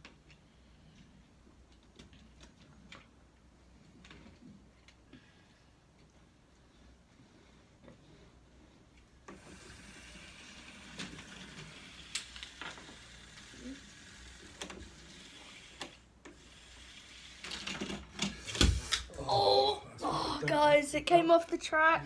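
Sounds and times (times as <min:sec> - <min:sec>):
toy train mechanical whirr: 0:09.3 - 0:19.1.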